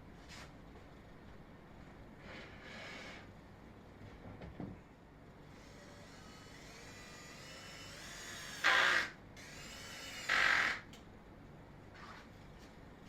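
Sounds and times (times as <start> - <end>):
power drill driving screws: 5.6 - 10.9.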